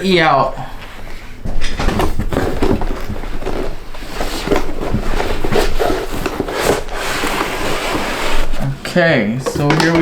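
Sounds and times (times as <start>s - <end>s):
packaging rustling: 1.6s - 8.6s
parts clicking and knocking: 9.4s - 10.0s.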